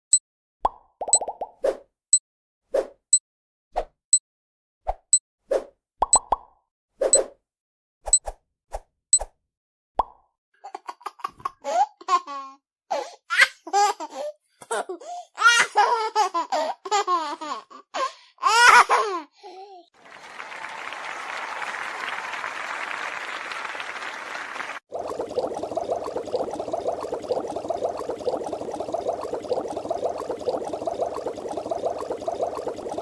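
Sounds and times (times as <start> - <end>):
baby laughing: 18.4 - 19.2.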